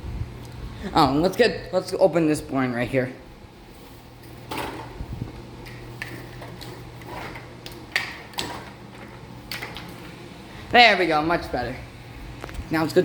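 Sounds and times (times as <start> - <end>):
ceiling fans humming: 0.0 - 13.0
window blind clicks and knocks: 6.1 - 10.0.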